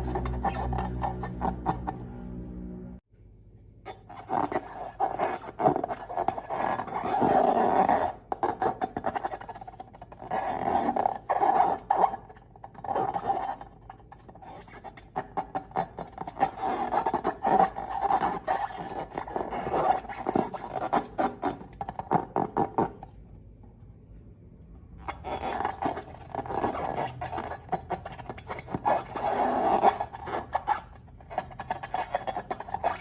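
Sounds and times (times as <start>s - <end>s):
squeaky tone: 0.0s - 2.9s.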